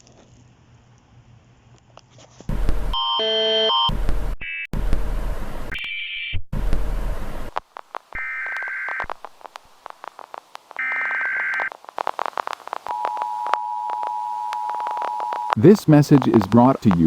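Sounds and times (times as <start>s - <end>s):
glitchy clicks: 6.6s - 17.0s
static hiss: 6.6s - 17.0s
data bursts: 8.1s - 17.0s.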